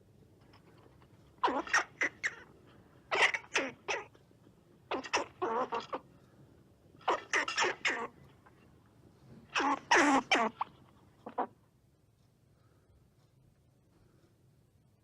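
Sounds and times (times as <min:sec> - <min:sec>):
squirrel chattering: 0:01.4 - 0:04.2, 0:04.9 - 0:06.1, 0:07.0 - 0:08.2, 0:09.5 - 0:11.6.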